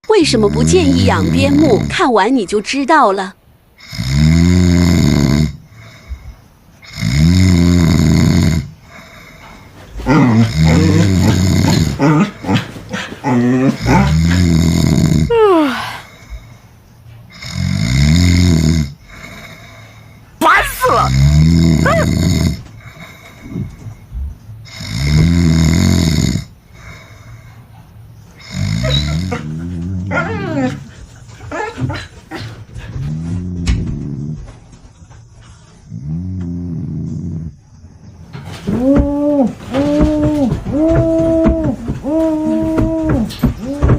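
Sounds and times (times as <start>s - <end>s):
dog growling: 0.0s - 2.1s, 6.8s - 16.4s, 20.4s - 24.0s, 28.4s - 34.8s, 35.6s - 37.8s, 38.4s - 43.9s
person snoring loudly: 0.3s - 2.0s, 3.8s - 6.1s, 6.8s - 12.6s, 13.2s - 16.3s, 17.3s - 23.8s, 24.6s - 27.3s, 28.4s - 30.2s, 35.9s - 37.6s.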